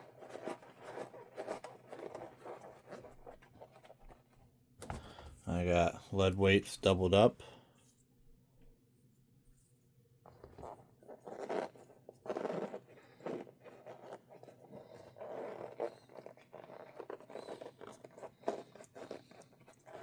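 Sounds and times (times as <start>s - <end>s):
rubber tire scraping and crinkling: 10.3s - 20.0s.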